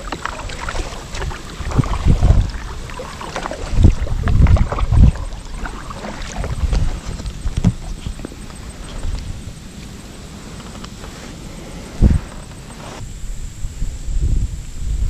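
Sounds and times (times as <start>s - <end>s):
paddle splashing in water: 0.0s - 13.0s.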